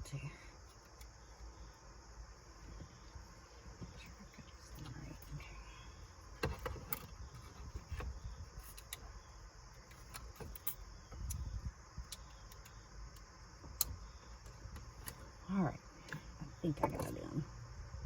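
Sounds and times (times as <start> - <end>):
crickets chirring: 0.0 - 18.0
small clicks and scrapes: 6.4 - 9.1.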